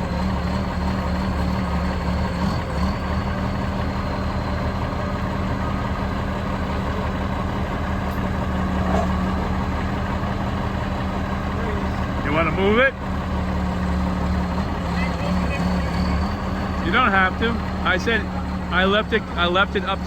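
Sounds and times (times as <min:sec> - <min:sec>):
heavy vehicle engine idling: 0:00.0 - 0:20.0.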